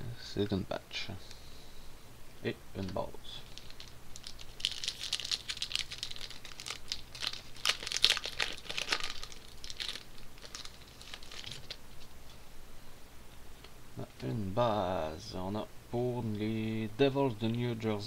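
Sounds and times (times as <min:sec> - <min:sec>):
foil wrapper crinkling and tearing: 0:03.4 - 0:12.1.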